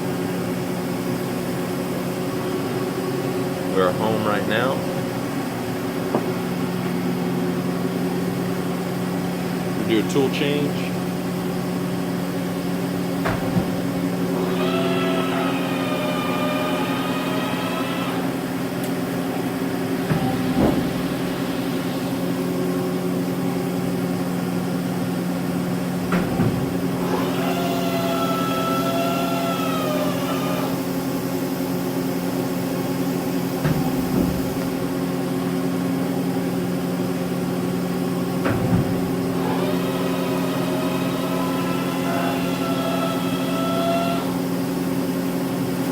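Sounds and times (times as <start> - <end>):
wavering turret whine: 0.0 - 45.6
lathe machine hum: 0.0 - 45.9
turret clunks: 13.1 - 14.2, 20.0 - 22.4, 26.0 - 27.0, 33.6 - 35.3, 38.4 - 39.4.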